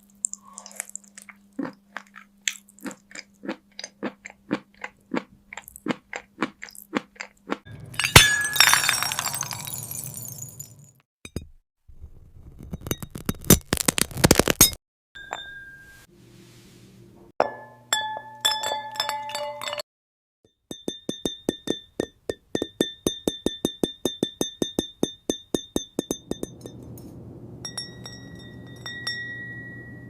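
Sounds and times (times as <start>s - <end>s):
ringing glass ping: 7.7s - 10.6s, 15.2s - 16.1s, 17.4s - 19.8s, 20.7s - 27.0s, 27.6s - 30.0s
glass clinks and taps: 11.3s - 11.5s, 15.2s - 16.0s, 17.4s - 19.8s, 20.7s - 27.0s, 27.6s - 30.0s.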